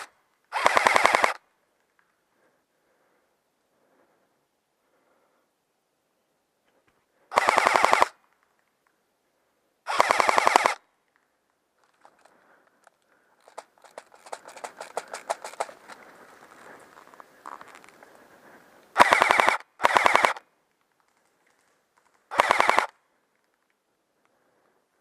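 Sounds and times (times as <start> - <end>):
airsoft gun bursts: 0.0 - 1.4, 7.3 - 8.2, 9.9 - 10.8, 13.4 - 16.0, 18.9 - 20.4, 22.3 - 23.0.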